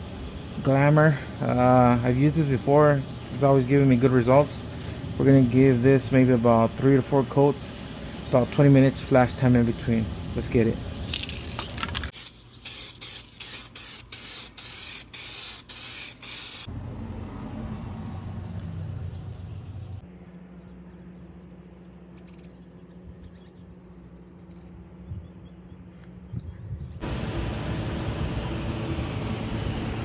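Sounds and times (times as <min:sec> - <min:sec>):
aerosol can spraying: 0:11.4 - 0:16.7
steady low hum: 0:16.6 - 0:30.0.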